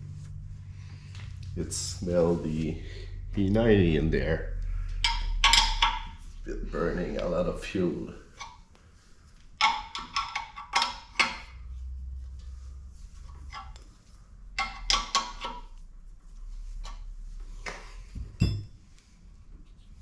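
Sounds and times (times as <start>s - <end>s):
metal parts clanking: 5.0s - 6.2s, 9.6s - 11.5s.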